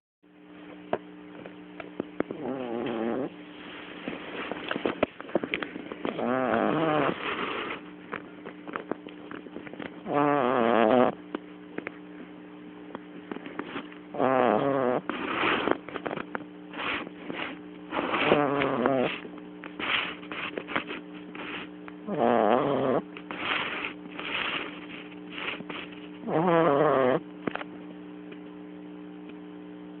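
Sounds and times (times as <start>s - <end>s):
dog snorts and wheezes: 2.3s - 3.3s, 6.1s - 7.8s, 13.7s - 15.8s, 16.7s - 19.2s, 19.8s - 27.2s
dog snoring: 2.3s - 3.4s, 6.0s - 7.8s, 10.0s - 11.2s, 13.6s - 15.8s, 16.7s - 27.3s.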